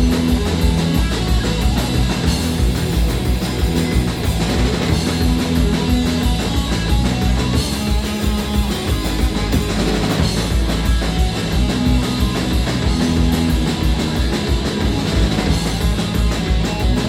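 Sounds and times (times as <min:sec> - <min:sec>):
punk rock band playing: 0:00.0 - 0:17.0.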